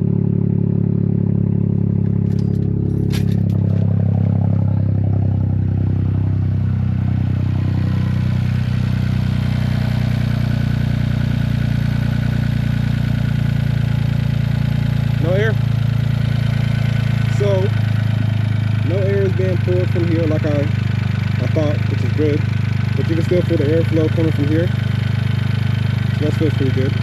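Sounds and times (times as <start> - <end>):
car engine idling: 0.0 - 27.0
sharp clicks and rattle: 2.0 - 3.9.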